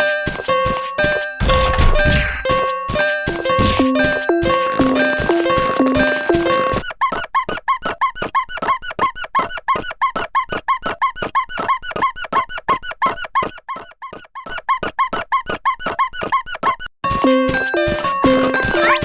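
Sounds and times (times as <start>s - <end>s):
cartoon squeaks: 3.4s - 16.9s, 18.2s - 19.0s.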